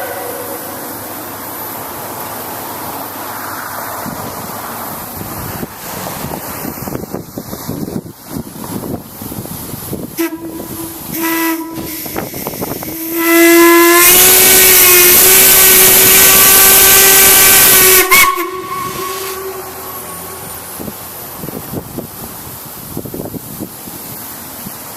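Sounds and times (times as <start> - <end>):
large whistle blowing: 0.0 - 1.1, 10.2 - 20.6
loud rushing hiss: 0.0 - 24.9.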